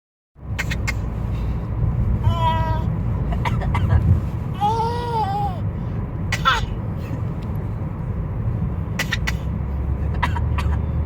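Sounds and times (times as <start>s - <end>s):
car cabin rumble: 0.4s - 11.0s
baby coughing: 0.6s - 1.1s, 3.3s - 4.0s, 6.3s - 6.8s, 9.0s - 9.5s, 10.2s - 10.8s.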